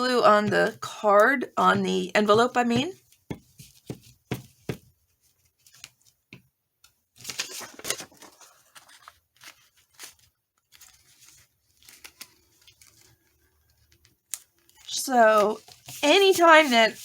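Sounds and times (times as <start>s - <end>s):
paper rustling and scraping: 7.2s - 13.5s, 14.8s - 17.0s.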